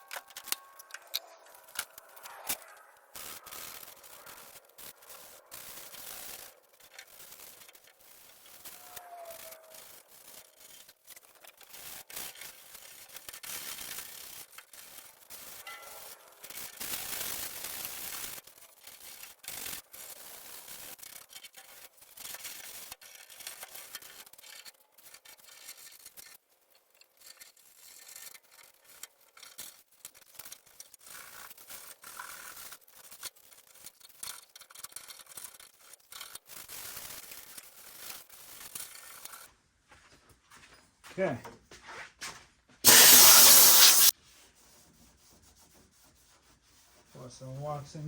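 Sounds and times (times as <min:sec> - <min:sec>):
sandpaper scratching on metal: 0:00.0 - 0:22.9, 0:42.9 - 0:47.8.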